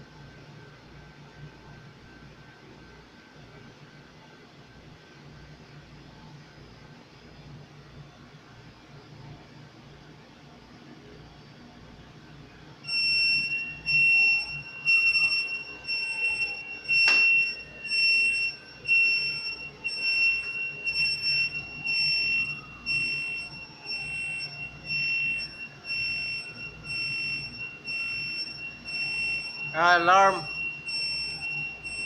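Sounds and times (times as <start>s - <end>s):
fire alarm tone: 12.8s - 32.0s.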